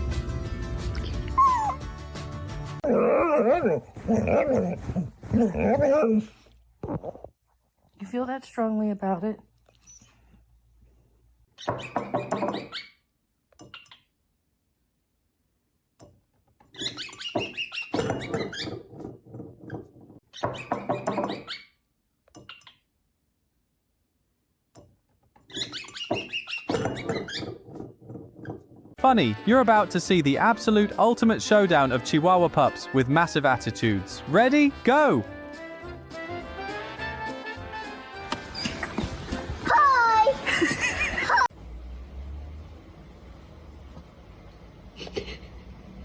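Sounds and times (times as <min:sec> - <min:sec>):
background music: 0:00.0 - 0:03.0, 0:29.0 - 0:39.7.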